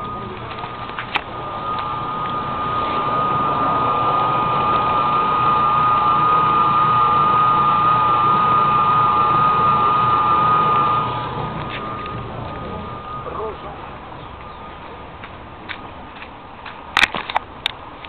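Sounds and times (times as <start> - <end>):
washing machine motor whining: 0.0 - 13.7.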